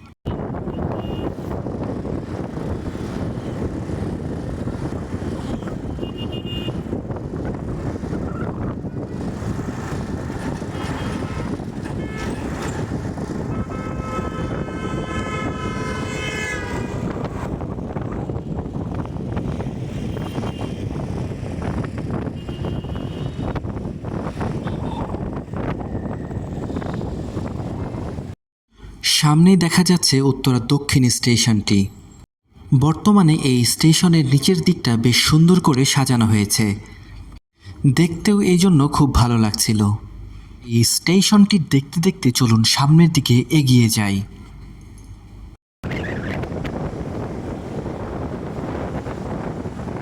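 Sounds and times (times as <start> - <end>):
vehicle road and engine noise: 0.0 - 50.0
loud pitched horn tone: 5.3 - 6.9, 10.7 - 12.8, 13.4 - 17.4, 22.2 - 23.6.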